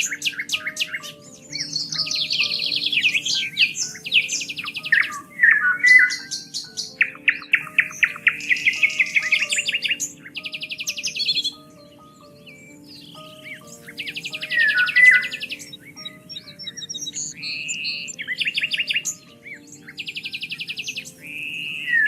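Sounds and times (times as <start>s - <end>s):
soft sustained background music: 0.0s - 22.0s
songbirds singing: 0.0s - 22.0s.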